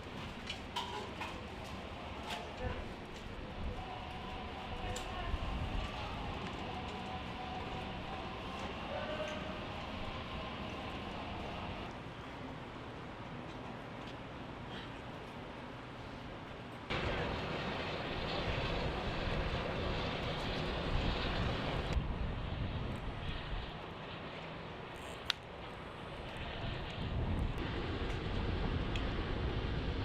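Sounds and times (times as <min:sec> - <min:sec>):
wind noise: 0:02.6 - 0:08.8, 0:16.9 - 0:30.0.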